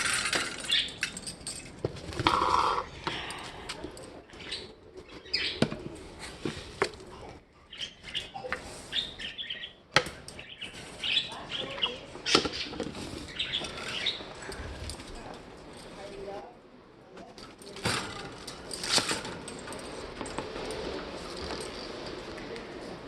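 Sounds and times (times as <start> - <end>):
birds chirping: 0.4 - 15.4.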